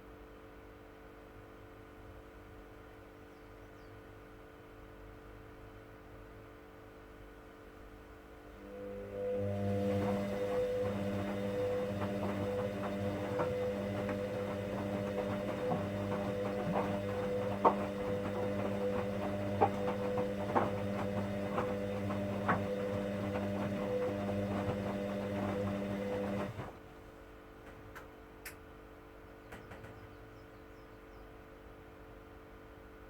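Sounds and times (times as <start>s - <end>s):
faint hum: 7.2s - 27.4s
washing machine motor hum: 8.5s - 27.0s.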